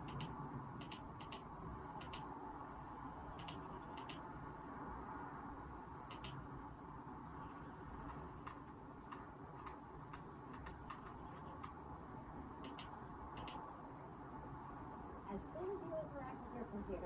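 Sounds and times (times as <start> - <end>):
keyboard key ticks: 0.0 - 1.4, 2.0 - 2.3, 3.4 - 4.2, 6.1 - 6.4, 12.6 - 13.6
mouse clicking: 0.0 - 2.3, 3.2 - 4.7, 6.1 - 6.4, 8.0 - 13.6
low room hum: 0.0 - 17.0.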